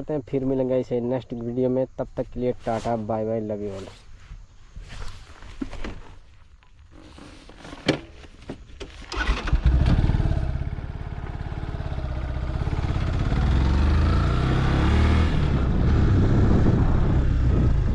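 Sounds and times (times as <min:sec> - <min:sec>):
motorcycle engine starting and running: 0:08.8 - 0:17.9.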